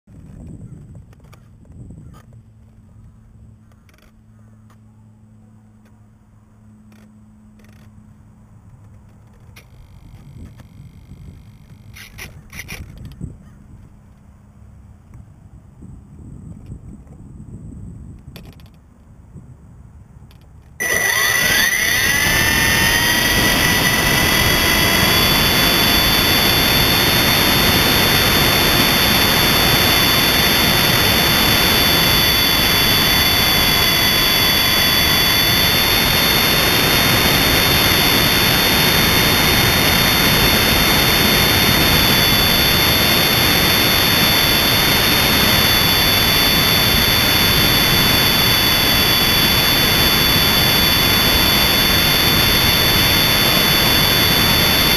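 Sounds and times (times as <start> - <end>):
electric motor whine: 20.8 - 54.9
helicopter rotor noise: 20.8 - 54.9.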